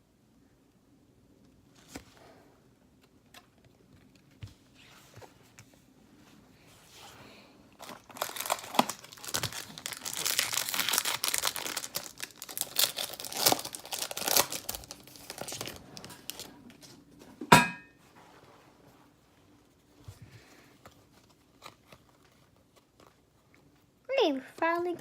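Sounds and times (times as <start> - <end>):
plastic wrapper tearing and crinkling: 7.8 - 16.9.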